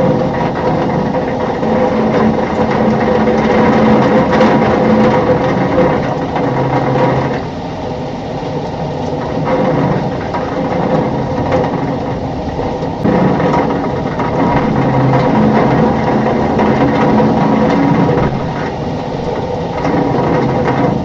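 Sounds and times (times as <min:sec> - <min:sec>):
heavy rain downpour: 0:00.0 - 0:21.0
wind: 0:00.0 - 0:21.0.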